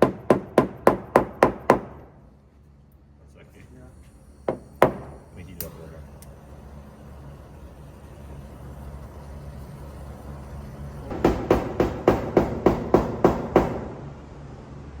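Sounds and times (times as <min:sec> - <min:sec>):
hammer tapping sheet metal: 0:11.1 - 0:13.9.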